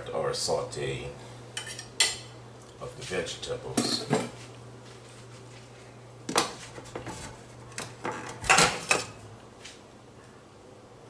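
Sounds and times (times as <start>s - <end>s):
pots and pans clattering: 8.0s - 9.2s.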